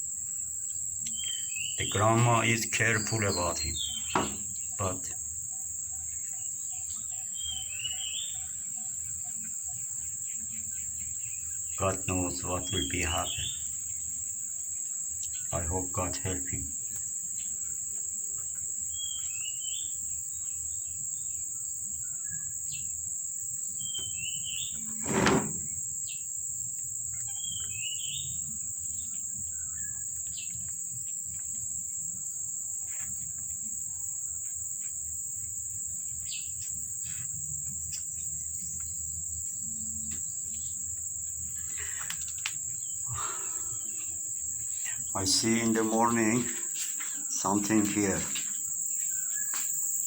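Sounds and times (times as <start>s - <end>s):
crickets chirring: 0.0s - 50.0s
bird chirping: 1.1s - 13.7s, 23.8s - 26.2s, 27.2s - 28.4s
loud knock: 4.1s - 4.5s, 25.0s - 25.7s.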